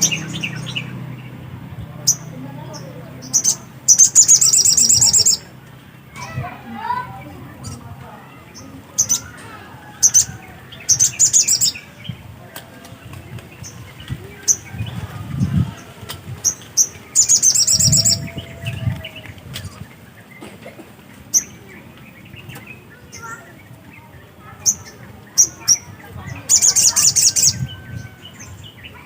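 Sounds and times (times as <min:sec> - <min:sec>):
bird chirping high: 0:00.0 - 0:09.4, 0:10.0 - 0:12.2, 0:16.4 - 0:20.4, 0:21.1 - 0:29.0.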